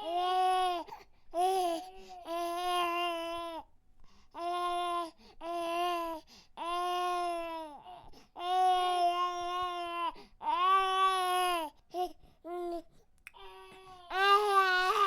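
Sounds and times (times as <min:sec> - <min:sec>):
infant crying: 0:04.4 - 0:12.8, 0:13.4 - 0:15.0.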